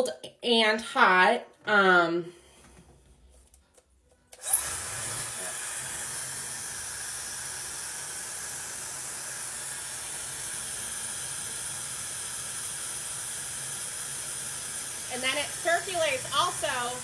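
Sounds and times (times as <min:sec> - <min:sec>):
hair dryer blowing air: 0:04.4 - 0:17.0.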